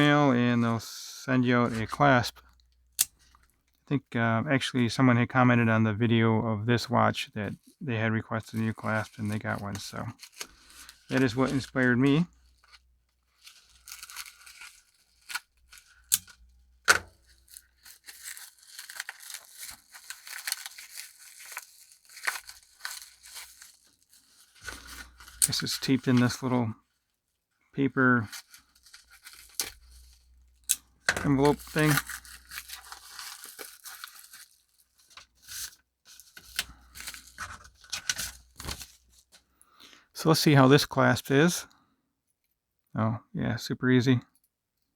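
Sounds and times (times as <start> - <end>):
paper packaging crinkling and tearing: 0.0 - 0.9, 1.6 - 3.5, 7.6 - 27.1, 28.0 - 39.4
sharp paper crackles: 8.4 - 26.7, 28.2 - 39.4.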